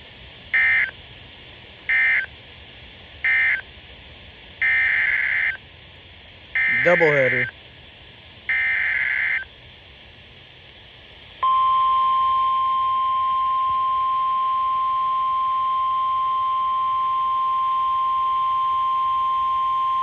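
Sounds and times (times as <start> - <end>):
steady warning alarm tone: 0.6 - 0.9, 1.9 - 2.3, 3.2 - 3.6, 4.6 - 5.6, 6.6 - 7.5, 8.5 - 9.5, 11.4 - 20.0
radio hiss: 1.4 - 11.4
digital data burst: 6.6 - 7.5.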